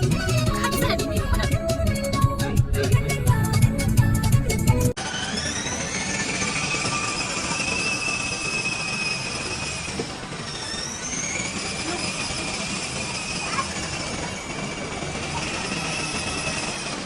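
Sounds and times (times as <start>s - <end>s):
wheels squealing on track: 5.0s - 17.0s
train rumbling on rails: 5.6s - 17.0s.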